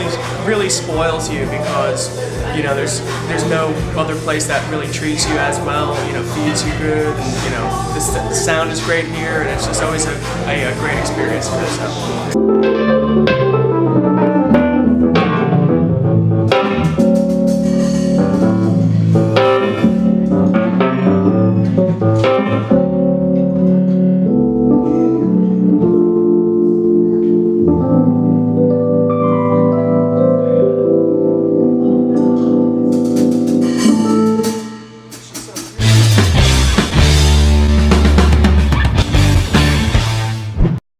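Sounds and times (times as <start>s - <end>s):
drums: 0.0s - 12.4s, 16.5s - 20.2s, 32.8s - 40.8s
low bass line: 0.0s - 34.9s, 35.8s - 40.8s
guitar: 0.0s - 40.8s.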